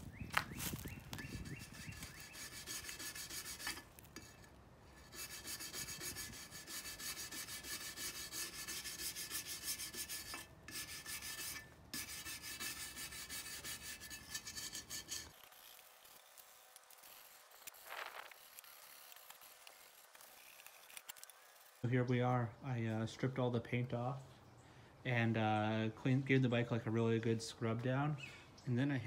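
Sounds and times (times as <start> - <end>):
wire brush scrubbing metal frame: 0.6 - 21.9.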